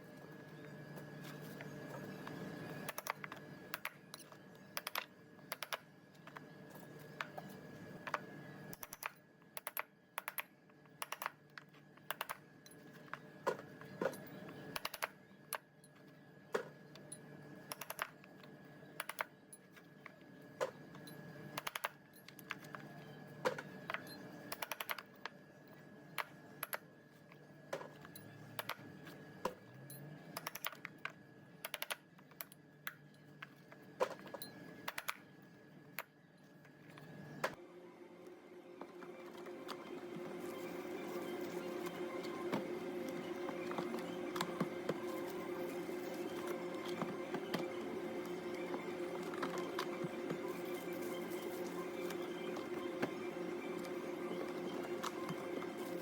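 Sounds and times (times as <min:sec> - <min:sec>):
steady hum: 0:00.0 - 0:56.0
thin high whine: 0:37.2 - 0:56.0.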